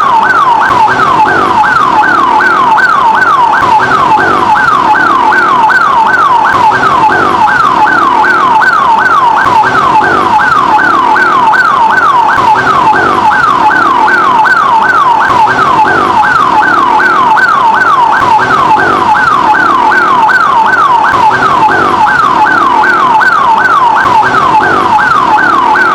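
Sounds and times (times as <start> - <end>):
ambulance siren wailing: 0.0 - 25.9.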